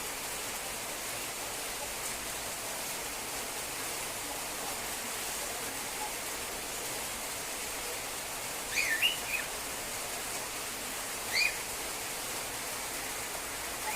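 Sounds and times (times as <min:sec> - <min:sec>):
steady hiss: 0:00.0 - 0:13.9
cockatiel chirping: 0:08.7 - 0:09.5, 0:11.3 - 0:11.6.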